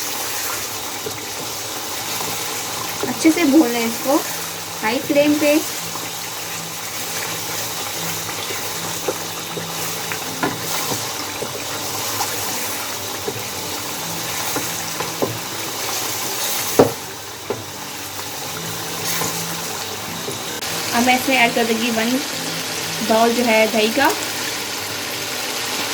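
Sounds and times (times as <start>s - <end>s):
chicken sizzling in a pan: 0.0s - 25.9s
spoon knocking and scraping pan: 6.9s - 20.6s.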